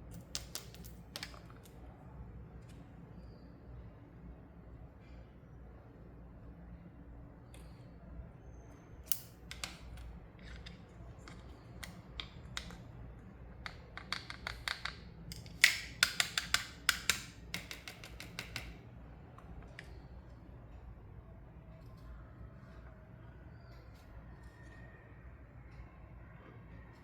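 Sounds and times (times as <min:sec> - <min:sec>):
toy pieces and packaging clicking: 0:00.1 - 0:01.8, 0:13.6 - 0:18.8.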